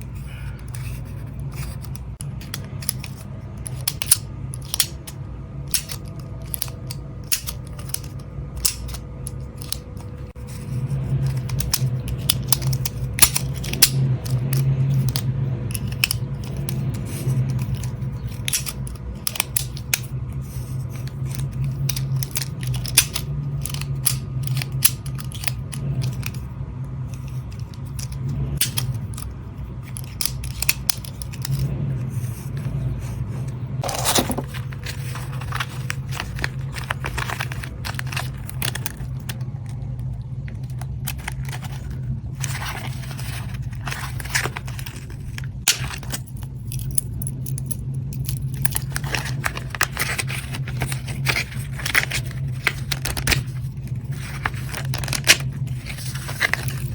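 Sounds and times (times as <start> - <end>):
steady low hum: 0.0 - 56.9
clicks and taps of small parts: 1.6 - 10.2, 11.2 - 20.1, 20.9 - 26.5, 27.2 - 29.3, 29.9 - 31.7
packaging rustling: 33.8 - 46.4, 48.5 - 56.9.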